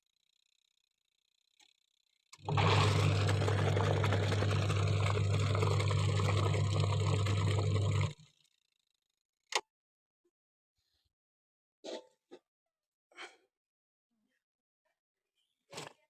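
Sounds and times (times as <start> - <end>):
washing machine running: 2.4 - 8.2.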